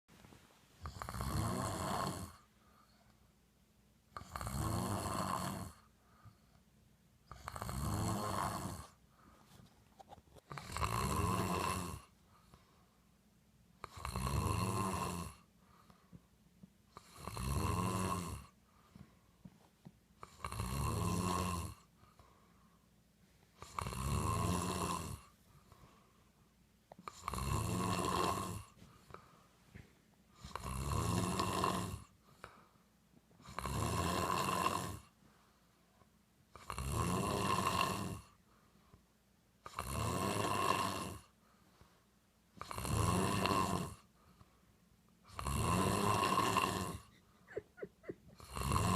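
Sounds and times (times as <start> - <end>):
man snoring loudly: 0.8 - 2.4, 4.2 - 5.8, 7.3 - 9.0, 10.5 - 12.1, 13.8 - 15.4, 17.0 - 18.5, 20.2 - 21.8, 23.6 - 25.3, 27.0 - 28.7, 30.4 - 32.1, 33.4 - 35.1, 36.5 - 38.3, 39.6 - 41.3, 42.6 - 44.1, 45.3 - 47.2, 48.4 - 48.9.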